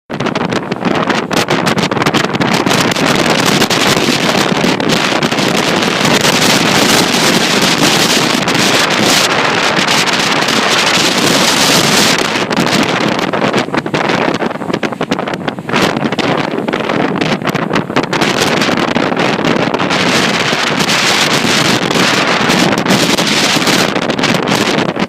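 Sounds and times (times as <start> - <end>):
wind buffeting microphone: 0.1 - 25.0
ocean waves breaking: 0.2 - 25.0.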